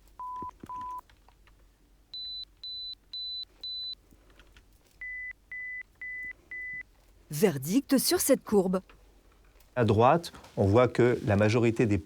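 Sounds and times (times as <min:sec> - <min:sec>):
audiometer beeps: 0:00.2 - 0:01.0, 0:02.2 - 0:04.0, 0:05.0 - 0:06.8.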